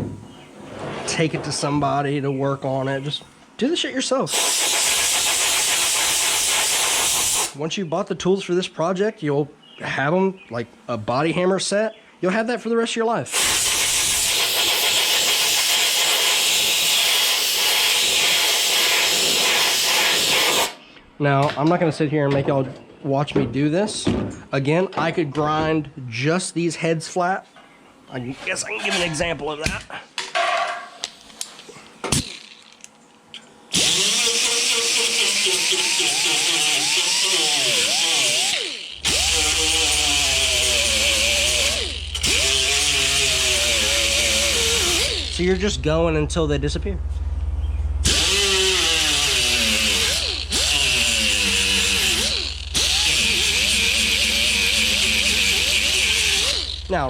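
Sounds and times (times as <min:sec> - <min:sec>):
air blow gun hissing: 0:04.3 - 0:07.6, 0:13.3 - 0:20.8
electric grinder whining: 0:33.7 - 0:45.7, 0:48.0 - 0:57.0.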